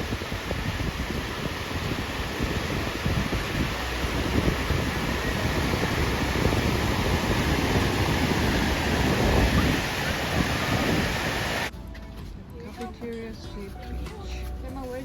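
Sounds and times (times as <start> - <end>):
ocean surf washing: 0.0 - 11.7
wind buffeting microphone: 0.0 - 11.7.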